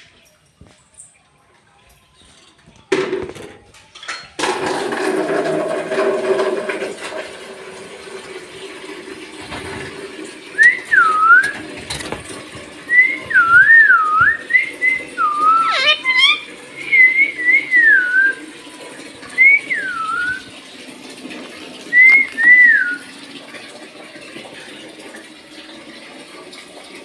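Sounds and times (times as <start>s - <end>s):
parrot whistling: 10.6s - 11.6s, 12.9s - 18.4s, 19.4s - 20.5s, 22.0s - 23.1s.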